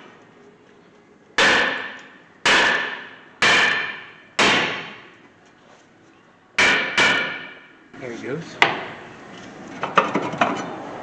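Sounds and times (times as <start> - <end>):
hammer clanging on metal: 6.6 - 7.6.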